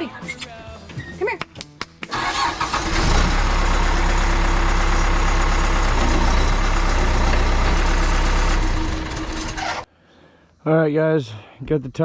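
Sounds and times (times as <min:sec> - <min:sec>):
diesel engine idling: 0:02.1 - 0:09.8.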